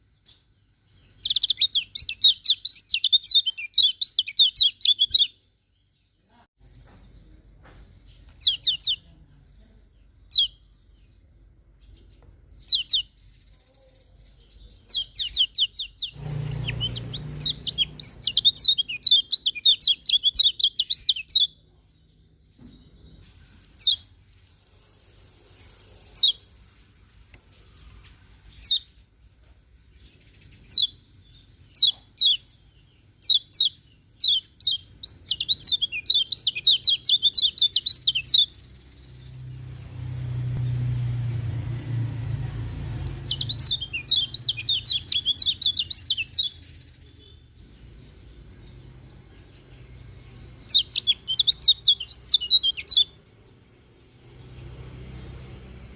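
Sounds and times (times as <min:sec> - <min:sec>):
bird chirping and twittering: 0:00.0 - 0:24.2, 0:25.5 - 0:26.8, 0:27.5 - 0:29.0, 0:29.8 - 0:55.9
low rumble: 0:39.5 - 0:43.6.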